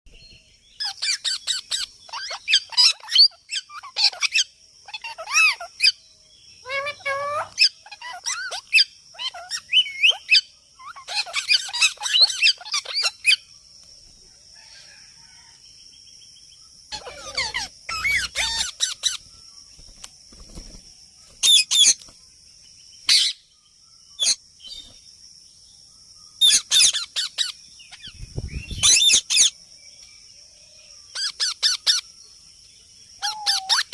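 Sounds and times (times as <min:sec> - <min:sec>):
parrot chirps and squawks: 0:00.8 - 0:06.0, 0:06.6 - 0:13.4, 0:16.9 - 0:19.2, 0:23.1 - 0:23.4, 0:26.4 - 0:28.1, 0:28.8 - 0:29.6, 0:31.1 - 0:32.0, 0:33.2 - 0:33.9.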